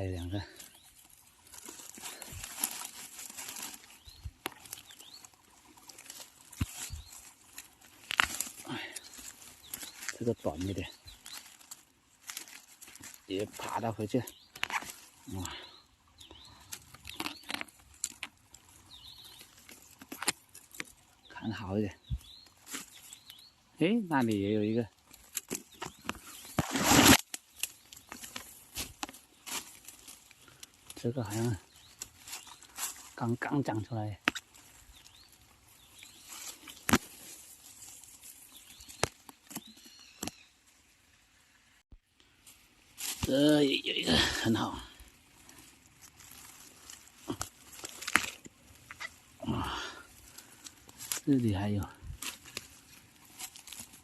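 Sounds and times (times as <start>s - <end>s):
bamboo stems cracking: 0.0s - 21.4s, 22.1s - 23.4s, 24.0s - 41.5s, 42.2s - 54.0s
leaves and bamboo rustling: 0.0s - 54.0s
rustling crash in undergrowth: 25.4s - 30.2s.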